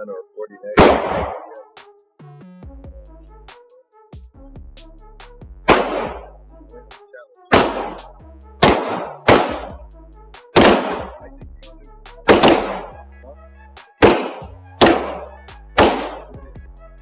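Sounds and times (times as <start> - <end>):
background music: 0.0 - 17.0
pistol shots with echo: 0.8 - 1.6, 5.7 - 6.3, 7.5 - 9.8, 10.6 - 11.2, 12.3 - 13.0, 14.0 - 16.4.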